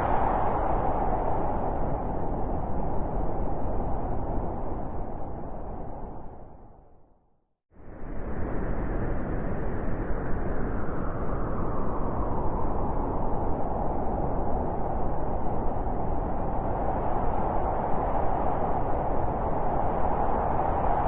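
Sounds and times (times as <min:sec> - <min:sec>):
wind blowing: 0:00.0 - 0:06.8.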